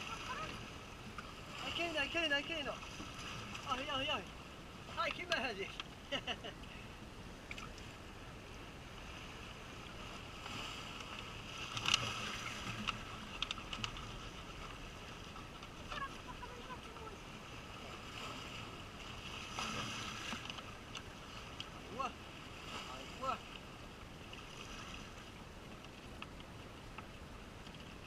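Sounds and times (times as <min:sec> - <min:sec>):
light wind: 0:00.0 - 0:28.0
sea lapping at shore: 0:00.0 - 0:28.0
small clicks: 0:12.7 - 0:14.1.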